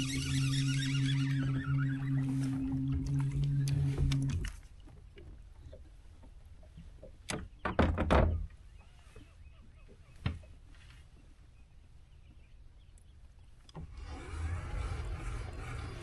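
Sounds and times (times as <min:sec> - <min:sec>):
motor hum: 0:00.0 - 0:04.9, 0:13.7 - 0:16.0
knocks and clatters on kayak: 0:04.0 - 0:08.6.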